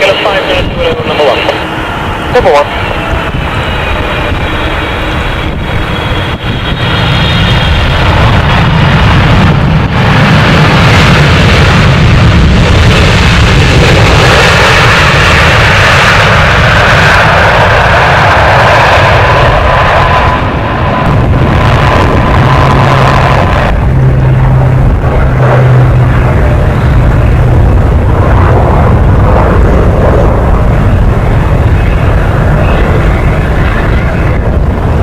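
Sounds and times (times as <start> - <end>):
jet airliner engine noise: 0.0 - 35.0
low hum: 0.0 - 35.0
thin whine: 17.1 - 35.0.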